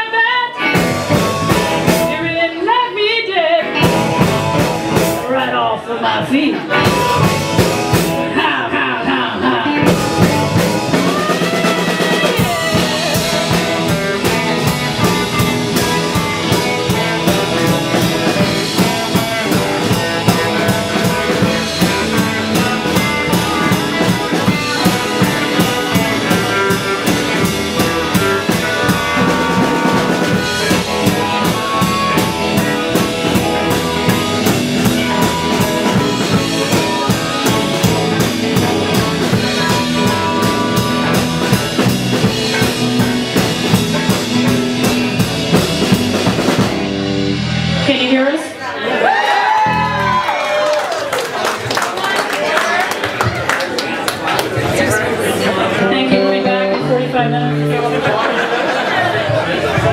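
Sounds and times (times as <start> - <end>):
live band playing: 0.0 - 59.9
drum rimshots: 0.6 - 2.3, 3.6 - 5.4, 6.7 - 8.4, 9.7 - 48.2.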